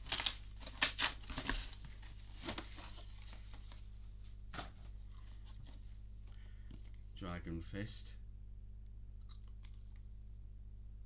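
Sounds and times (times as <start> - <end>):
faint electrical hum: 0.0 - 11.0.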